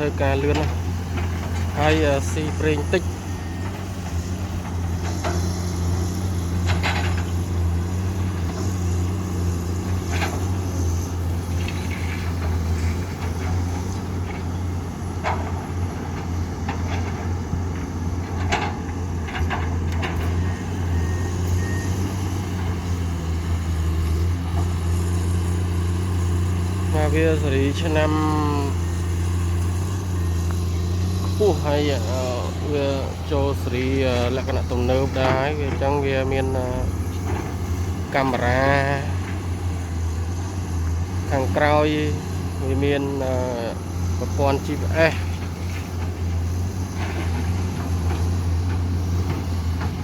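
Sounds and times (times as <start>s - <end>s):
excavator diesel engine running: 0.0s - 50.0s
metallic clanks and knocks: 18.3s - 20.3s.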